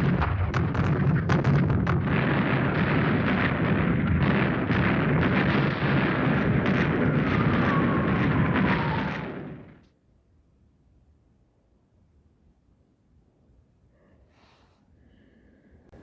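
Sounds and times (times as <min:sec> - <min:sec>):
explosions rumbling: 0:00.0 - 0:09.8
sharp blasts: 0:00.0 - 0:09.8.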